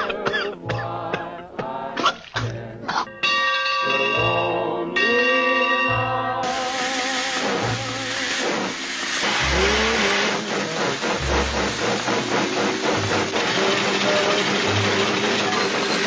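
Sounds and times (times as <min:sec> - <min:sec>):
rhythmic mechanical hiss: 0:06.4 - 0:16.0
sliding tones: 0:06.4 - 0:16.0.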